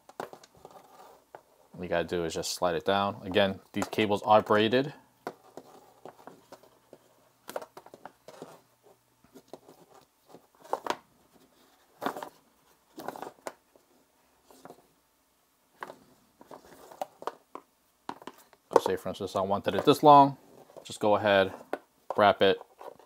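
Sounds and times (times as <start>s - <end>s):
cable rustling and rubbing: 0.0s - 1.8s, 3.6s - 15.0s, 15.8s - 23.0s.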